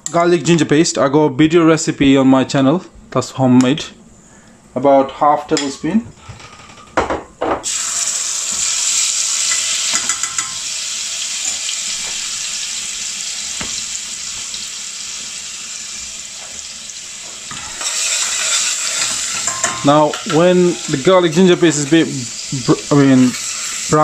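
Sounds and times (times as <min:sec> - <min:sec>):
paste sizzling in hot oil: 0:07.6 - 0:24.0.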